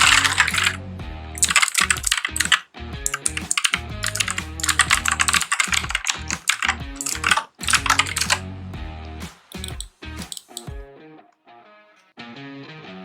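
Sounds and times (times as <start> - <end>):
mechanical keyboard typing: 0.0 - 0.8, 1.4 - 8.4, 9.6 - 10.7
background music: 0.0 - 10.8.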